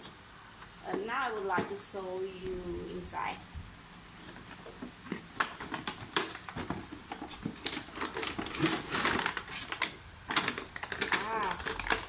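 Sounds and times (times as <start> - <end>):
cardboard box opening: 4.2 - 12.0
packaging rustling: 4.2 - 12.0.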